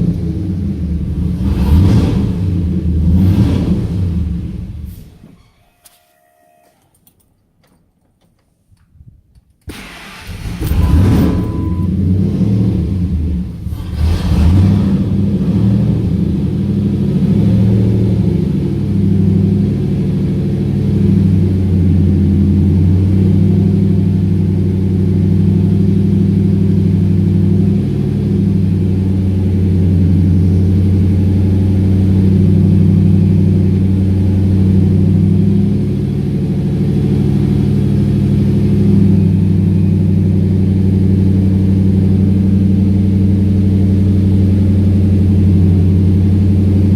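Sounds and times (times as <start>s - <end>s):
engine starting and idling: 9.7s - 44.7s.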